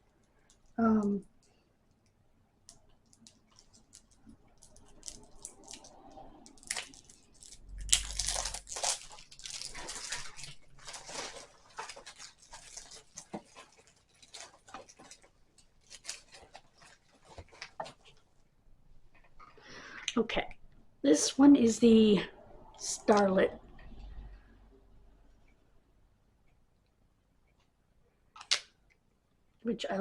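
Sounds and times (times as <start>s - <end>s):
plastic packaging crinkling and tearing: 3.0s - 18.2s.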